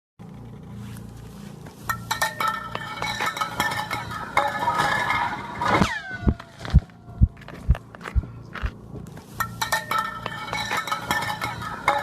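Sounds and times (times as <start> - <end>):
ice fragments clinking: 1.9 - 5.6, 9.4 - 12.0
falling laser-like glides: 4.5 - 7.4
low thuds: 5.6 - 9.1.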